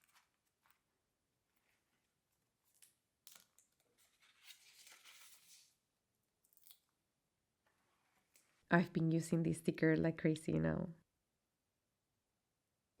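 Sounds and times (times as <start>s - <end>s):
paper tearing rustle: 4.0s - 5.7s.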